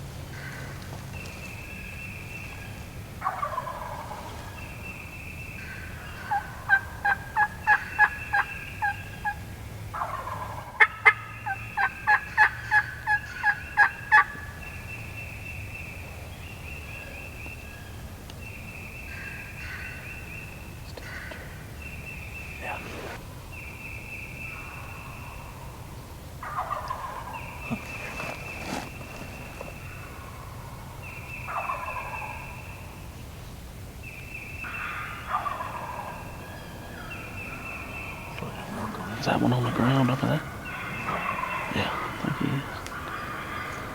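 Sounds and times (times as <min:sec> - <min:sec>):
turkey yelping: 0:03.2 - 0:04.4, 0:06.0 - 0:09.4, 0:10.0 - 0:14.4, 0:26.4 - 0:30.9, 0:31.5 - 0:32.6, 0:34.7 - 0:43.9.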